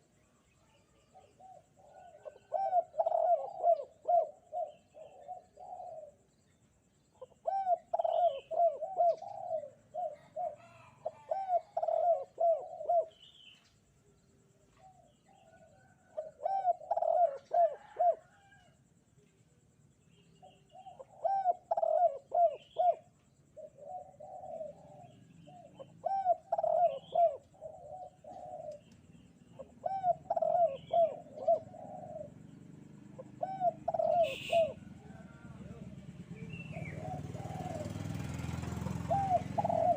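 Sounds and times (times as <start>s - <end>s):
dove cooing: 0.0s - 6.4s, 7.2s - 13.7s, 14.4s - 18.8s, 20.4s - 39.9s
faint small bird chirps: 0.0s - 31.6s.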